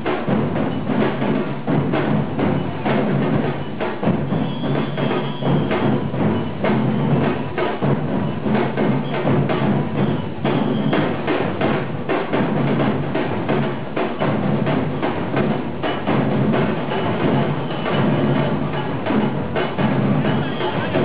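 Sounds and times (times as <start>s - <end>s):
drums and busy percussion: 0.0s - 21.0s.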